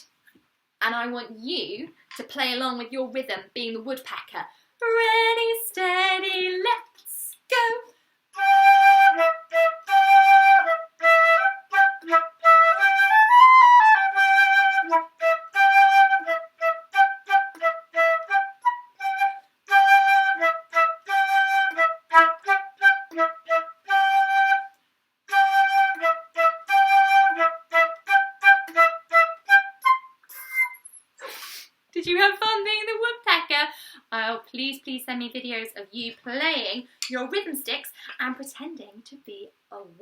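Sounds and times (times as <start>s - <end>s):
flute playing a melody: 8.4s - 31.0s.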